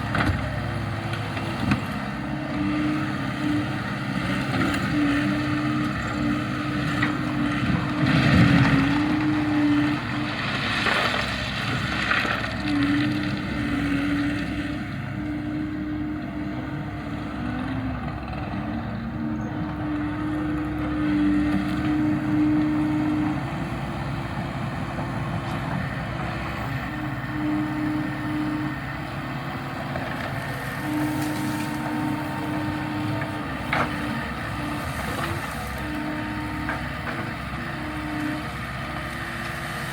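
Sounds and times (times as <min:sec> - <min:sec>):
heavy machinery running: 0:00.0 - 0:39.9.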